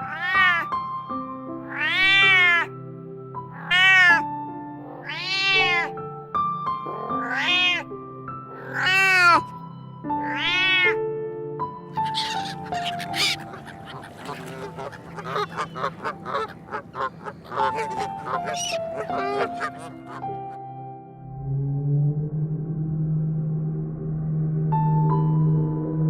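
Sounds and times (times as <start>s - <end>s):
cat meowing: 0.0s - 0.8s, 1.6s - 2.7s, 3.4s - 4.3s, 4.9s - 6.0s, 6.8s - 7.9s, 8.5s - 9.5s, 10.1s - 11.0s, 12.0s - 20.2s
soft background music: 0.0s - 26.0s.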